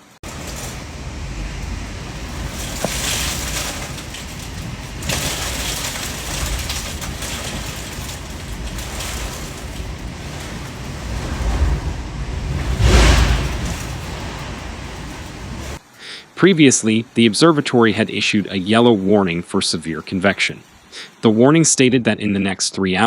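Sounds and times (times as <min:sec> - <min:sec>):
rain and wind rushing hiss: 0:00.0 - 0:15.9
wind buffeting microphone: 0:00.2 - 0:15.8.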